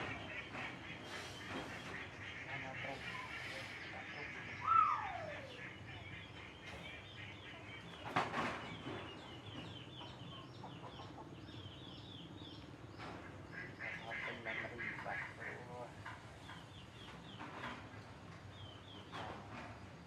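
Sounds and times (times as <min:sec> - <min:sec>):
high-pitched animal calls: 0:04.4 - 0:06.1.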